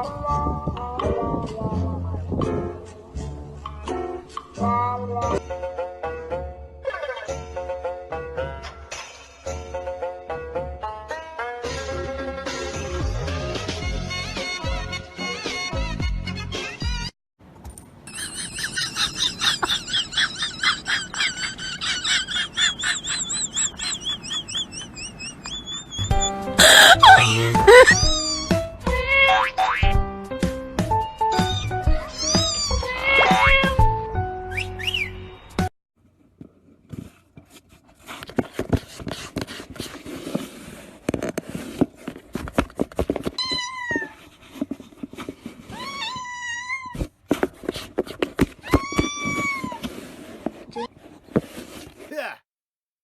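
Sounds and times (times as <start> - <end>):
small animal chirping: 22.6 - 26.4
cat meowing: 25.8 - 29.4, 32.1 - 33.6.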